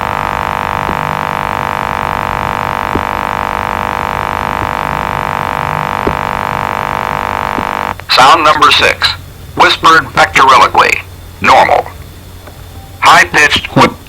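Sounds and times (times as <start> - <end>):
steady buzzing tone: 0.0 - 9.6.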